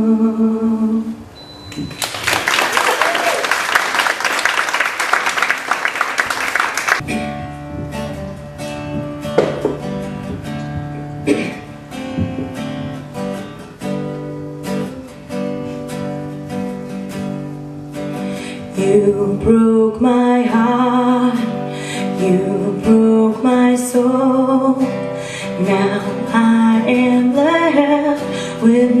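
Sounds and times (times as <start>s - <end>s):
audience applause: 1.9s - 7.0s
acoustic guitar picking: 7.0s - 29.0s.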